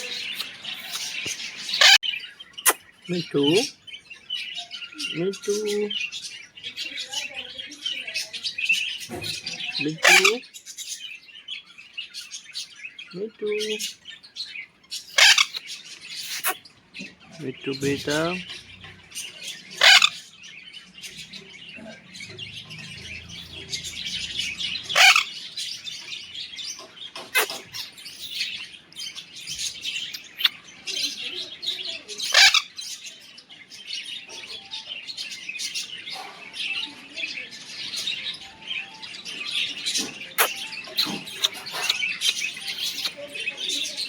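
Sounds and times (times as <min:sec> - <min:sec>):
parrot screeching: 0:00.0 - 0:02.0, 0:10.0 - 0:10.4, 0:15.1 - 0:15.6, 0:16.2 - 0:16.6, 0:19.8 - 0:20.2, 0:24.8 - 0:25.4, 0:27.3 - 0:28.5, 0:32.2 - 0:32.8, 0:40.2 - 0:43.2
high chirping: 0:00.0 - 0:10.7, 0:13.1 - 0:31.4, 0:34.2 - 0:44.0.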